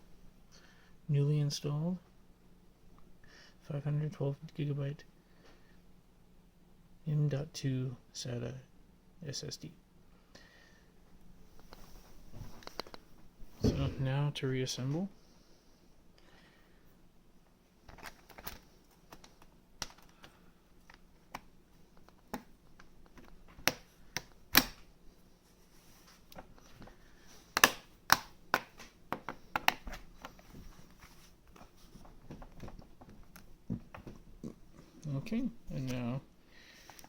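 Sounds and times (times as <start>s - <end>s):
plastic parts snapping: 20.9s - 24.8s, 27.5s - 30.0s.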